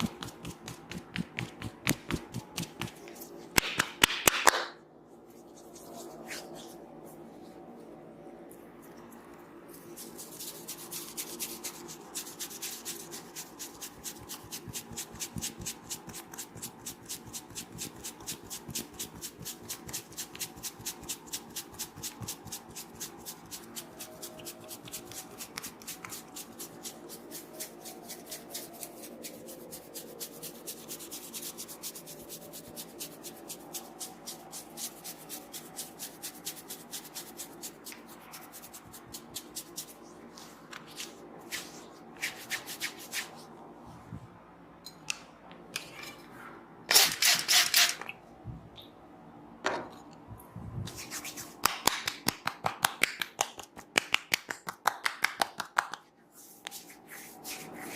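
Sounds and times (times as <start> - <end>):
hands rubbing a head: 5.3 - 7.6, 50.9 - 57.9.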